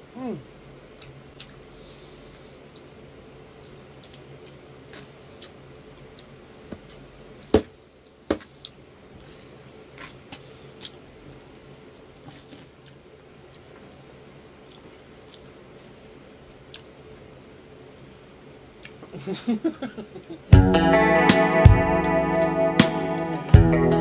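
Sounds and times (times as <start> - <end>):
faint steady hum: 0.0 - 24.0
wet eating squishes and clicks: 0.9 - 17.0.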